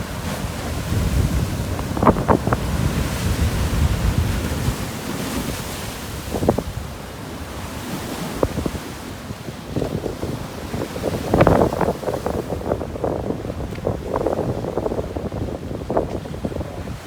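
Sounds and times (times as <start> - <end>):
rough sea surf on shore: 0.0 - 17.0
wind buffeting microphone: 0.0 - 17.0.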